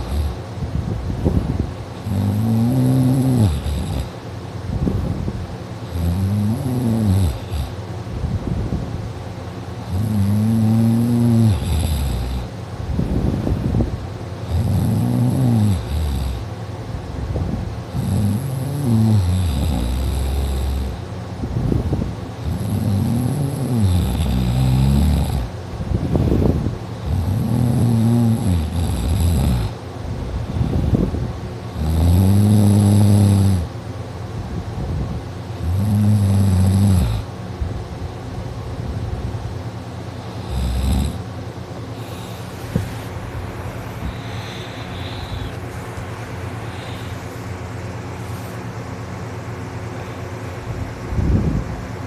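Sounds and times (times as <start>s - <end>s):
loud rasping snoring: 0.0s - 0.5s, 2.0s - 4.2s, 5.8s - 7.9s, 9.8s - 12.6s, 14.4s - 16.5s, 17.9s - 21.1s, 22.4s - 25.6s, 26.5s - 29.8s, 31.7s - 33.7s, 35.5s - 37.4s, 40.2s - 41.3s, 41.9s - 47.5s.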